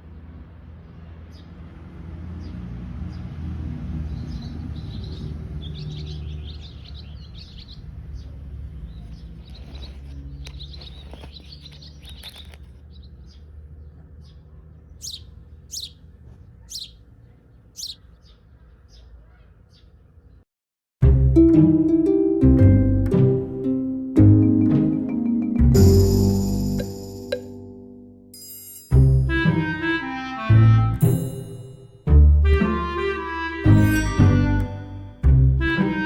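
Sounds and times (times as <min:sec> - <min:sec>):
small birds chirping: 0:04.0 - 0:20.4.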